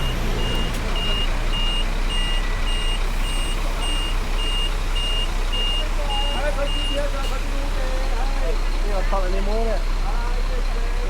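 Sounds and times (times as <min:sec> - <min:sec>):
reversing alarm beeping: 0:00.0 - 0:07.0.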